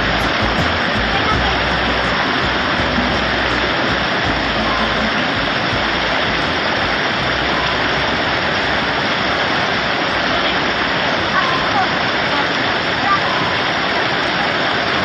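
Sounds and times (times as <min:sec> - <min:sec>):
water rushing over rock: 0:00.0 - 0:15.0.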